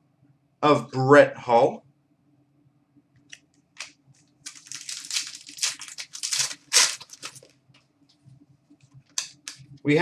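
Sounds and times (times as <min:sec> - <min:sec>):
wrapper crinkling and tearing: 0:03.8 - 0:07.5.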